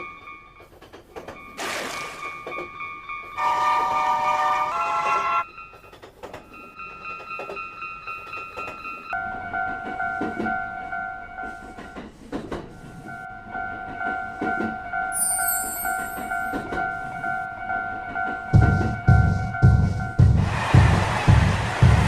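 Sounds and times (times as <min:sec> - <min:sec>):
passing train clatter: 0:00.0 - 0:22.0
level crossing bell ringing: 0:13.2 - 0:20.2
high whistle: 0:15.1 - 0:16.3
music with heavy beat: 0:18.6 - 0:22.0.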